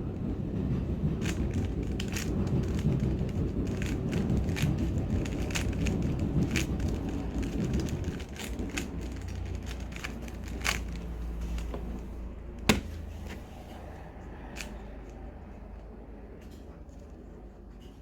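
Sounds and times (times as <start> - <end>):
low steady hum: 0.0 - 17.6
rustling handling noise: 5.2 - 13.9.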